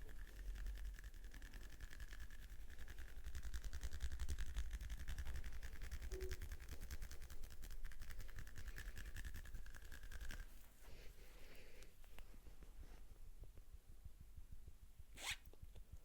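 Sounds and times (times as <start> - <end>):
hands patting scalp in massage: 1.3 - 10.9.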